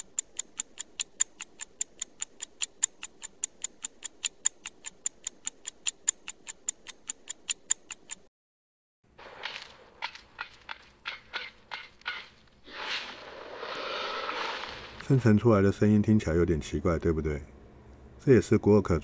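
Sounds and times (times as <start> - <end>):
clock-like ticking: 0.0 - 8.3.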